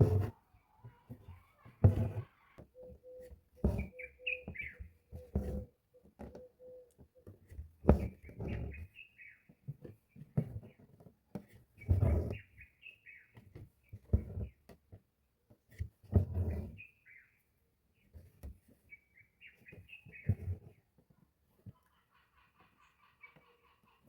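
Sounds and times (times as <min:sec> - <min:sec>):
small birds chirping: 0:00.6 - 0:05.4, 0:08.0 - 0:10.9, 0:11.8 - 0:14.1, 0:16.8 - 0:17.4, 0:18.8 - 0:20.9, 0:21.6 - 0:24.0
soft thumps and rustles: 0:01.1 - 0:02.3, 0:03.6 - 0:06.4.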